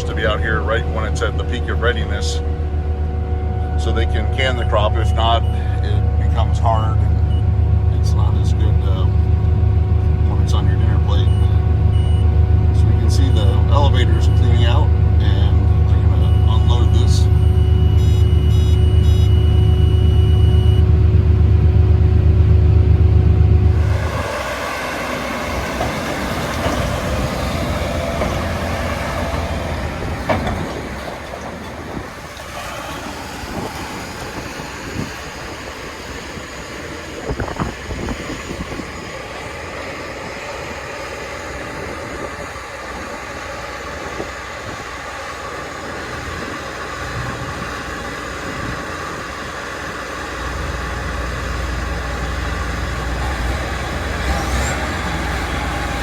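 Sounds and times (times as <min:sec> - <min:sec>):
deep engine rumble: 0:00.0 - 0:56.0
harvester machinery clatter: 0:20.2 - 0:56.0.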